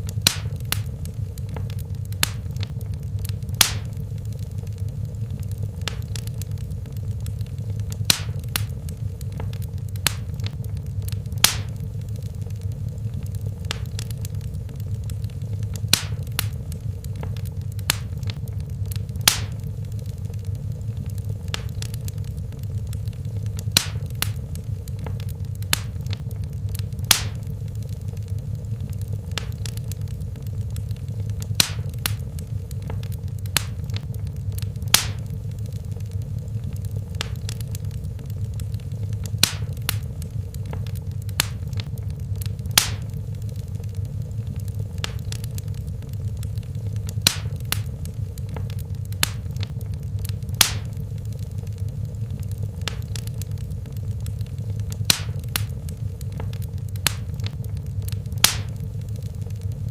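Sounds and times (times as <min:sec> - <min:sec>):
burning wood popping and crackling: 0:00.0 - 0:59.9
low rumble of flames: 0:00.0 - 0:59.9.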